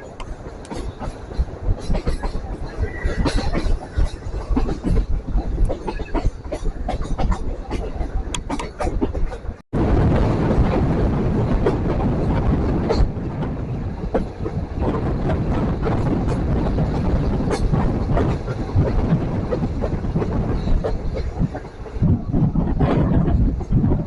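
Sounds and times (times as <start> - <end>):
wheels clicking over rails: 0.0 - 9.6
train rumbling on track: 0.0 - 24.0.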